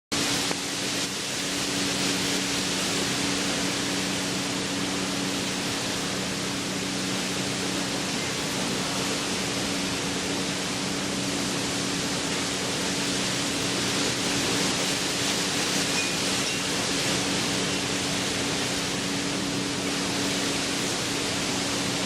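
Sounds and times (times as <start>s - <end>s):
hurricane wind and rain: 0.1s - 22.0s
low steady hum: 0.2s - 22.0s.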